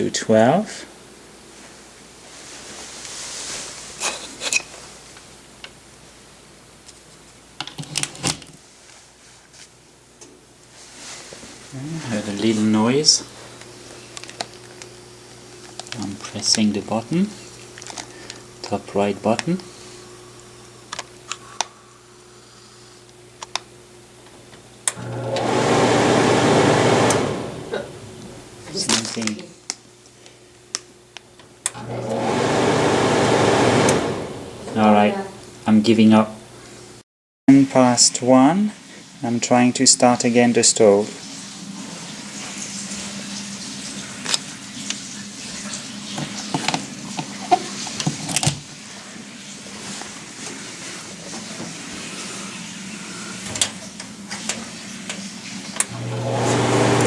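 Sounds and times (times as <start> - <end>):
pellet stove humming and hissing: 19.6 - 28.9, 31.6 - 35.6, 49.5 - 57.0
fan whirring: 24.8 - 28.9, 31.6 - 35.9, 55.8 - 57.0.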